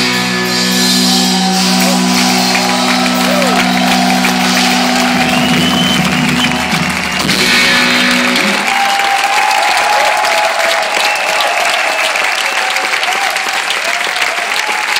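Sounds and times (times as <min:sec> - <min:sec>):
rock band final chord: 0:00.0 - 0:08.7
audience applauding and cheering: 0:00.5 - 0:14.9.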